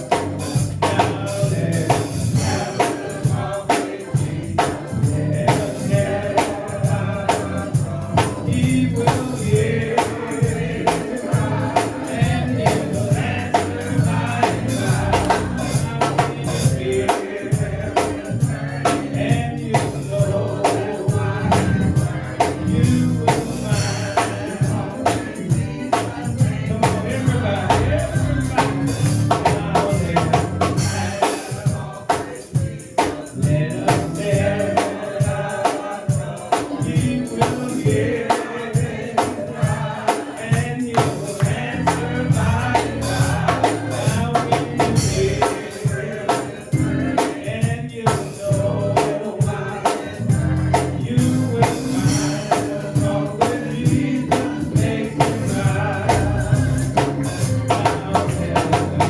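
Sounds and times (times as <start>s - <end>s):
choir singing: 0.0s - 59.0s
tambourine beat: 0.0s - 59.0s.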